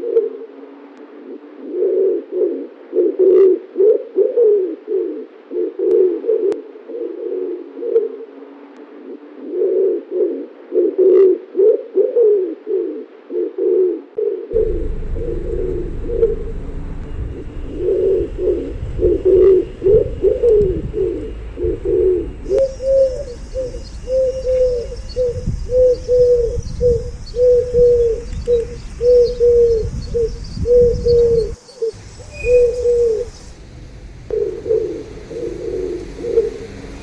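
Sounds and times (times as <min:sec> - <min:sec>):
pigeons cooing: 0:00.0 - 0:33.3, 0:34.3 - 0:37.0
low rumble: 0:14.5 - 0:37.0.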